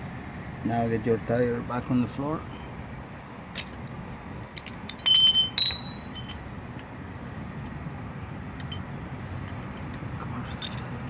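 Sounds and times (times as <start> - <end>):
steady low hum: 2.4 - 10.3
bright metallic clinks: 4.9 - 6.4.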